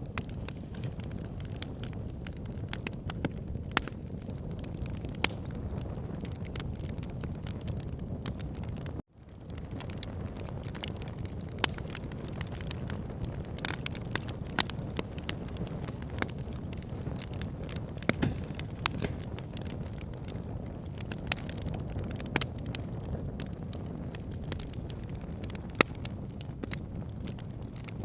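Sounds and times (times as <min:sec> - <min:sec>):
burning wood crackling and popping: 0:00.0 - 0:28.0
fire flames rumbling: 0:00.0 - 0:28.0.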